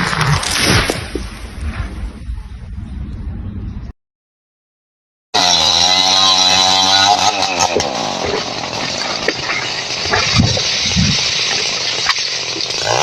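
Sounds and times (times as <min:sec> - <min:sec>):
chainsaw engine running: 0:05.4 - 0:13.0.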